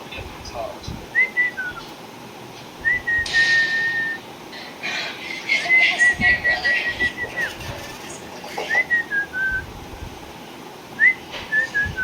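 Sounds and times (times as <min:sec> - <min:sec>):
person whistling: 0:01.2 - 0:01.8, 0:02.8 - 0:04.2, 0:08.7 - 0:09.7, 0:11.0 - 0:12.0.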